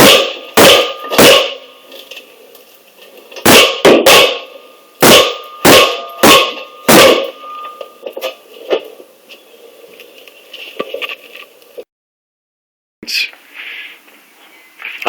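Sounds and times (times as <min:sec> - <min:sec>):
hammer blows on metal rotor: 0:00.0 - 0:01.9, 0:03.5 - 0:08.5.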